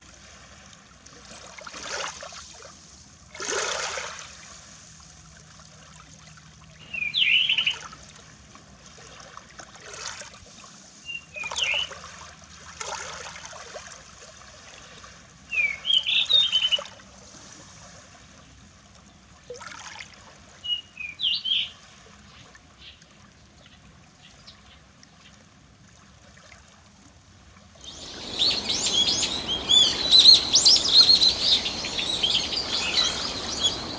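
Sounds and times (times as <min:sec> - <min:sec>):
small waves lapping at shore: 0:00.0 - 0:33.9
many bird calls: 0:27.8 - 0:33.9
quick high bird chirps: 0:27.8 - 0:33.9.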